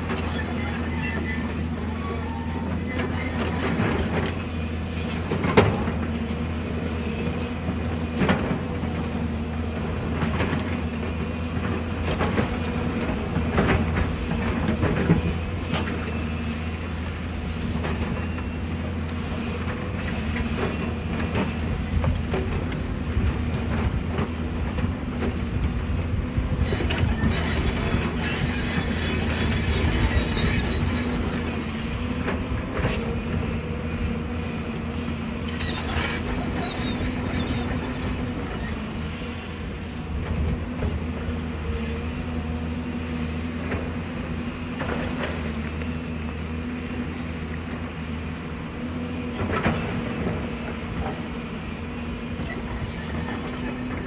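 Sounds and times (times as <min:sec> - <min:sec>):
hydraulic whine: 0:00.0 - 0:06.0, 0:12.0 - 0:40.8, 0:50.9 - 0:54.0
excavator engine drone: 0:00.0 - 0:54.0.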